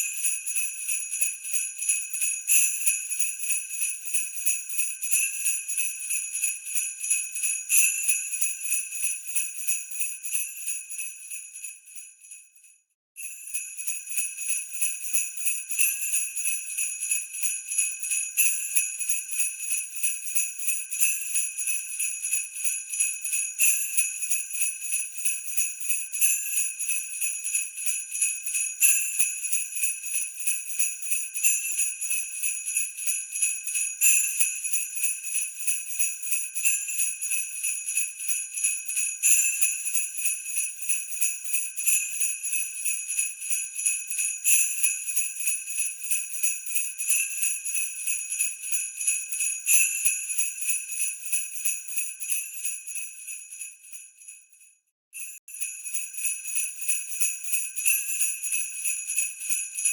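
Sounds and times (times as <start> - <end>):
sleigh bells jingling: 27.2 - 47.8, 55.2 - 59.9.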